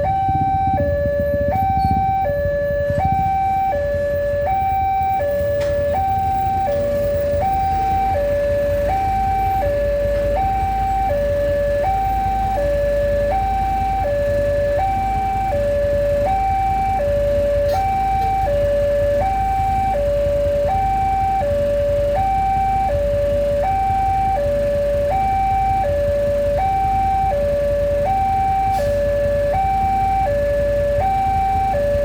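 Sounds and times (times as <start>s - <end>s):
low rumble: 0.0s - 10.9s
two-tone level crossing alarm: 0.0s - 32.0s.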